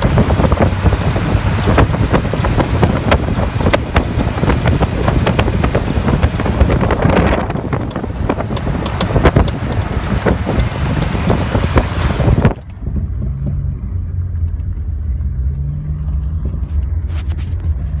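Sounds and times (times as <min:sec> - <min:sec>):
engine drone: 0:00.0 - 0:18.0
road and wind noise: 0:00.0 - 0:18.0
sharp popping noise: 0:02.8 - 0:13.6.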